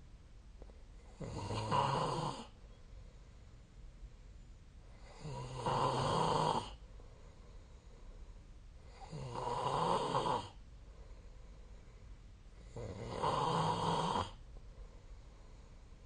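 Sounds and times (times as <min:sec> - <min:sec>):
person snoring: 0:01.1 - 0:02.5, 0:05.0 - 0:06.8, 0:08.9 - 0:10.6, 0:12.7 - 0:14.4.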